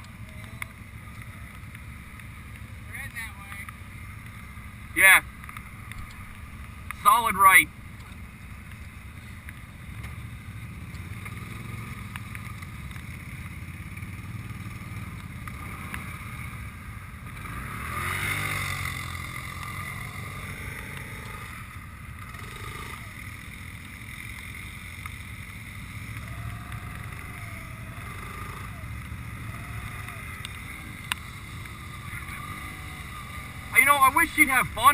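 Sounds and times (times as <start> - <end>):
atv engine running: 0.0 - 34.9.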